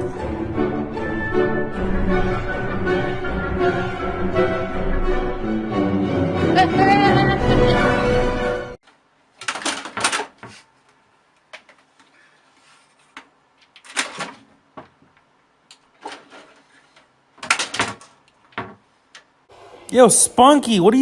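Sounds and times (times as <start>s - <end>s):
clattering or rustling bursts: 9.4s - 10.7s, 11.6s - 15.2s, 15.8s - 18.9s
household clicks and knocks: 17.4s - 18.8s.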